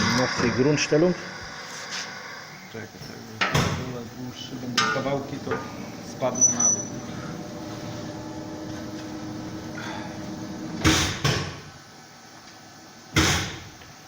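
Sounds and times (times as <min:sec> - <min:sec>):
saw drive humming: 0:00.0 - 0:11.0.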